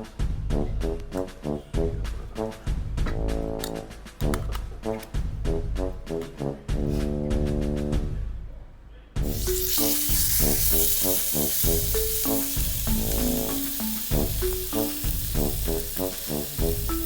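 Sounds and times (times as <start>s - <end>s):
meat sizzling over a fire: 9.2s - 17.0s
melodic background music: 9.2s - 17.0s.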